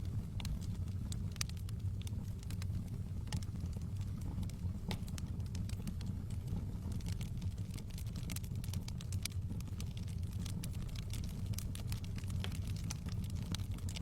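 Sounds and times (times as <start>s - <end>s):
bonfire crackling and popping: 0.0s - 14.0s
low fire rumble: 0.0s - 14.0s.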